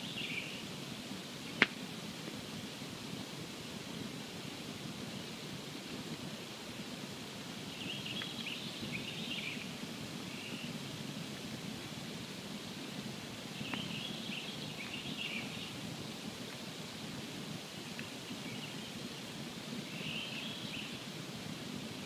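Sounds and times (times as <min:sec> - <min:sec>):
campfire crackling and hissing: 0:00.0 - 0:22.0
campfire sharp pop: 0:01.5 - 0:01.9.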